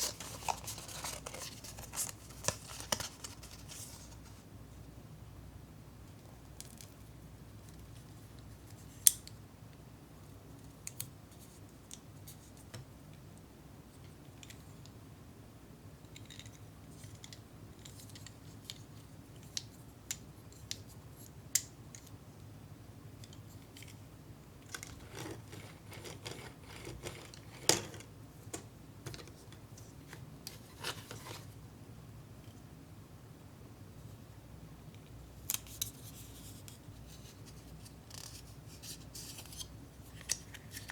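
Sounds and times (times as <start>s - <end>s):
packets rustling: 0.0s - 4.1s.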